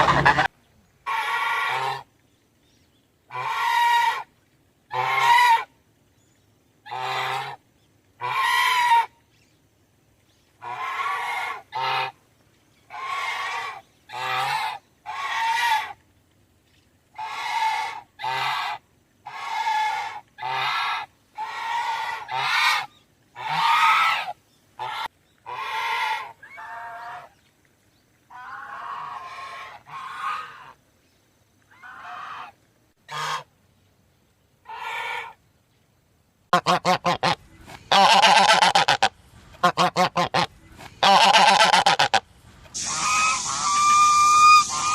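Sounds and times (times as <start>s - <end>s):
goose honking: 0.0s - 0.5s, 1.1s - 2.1s, 3.3s - 4.3s, 4.9s - 5.7s, 8.2s - 9.1s, 17.2s - 27.3s, 31.8s - 32.5s, 33.1s - 33.5s, 36.5s - 42.2s, 42.8s - 44.9s.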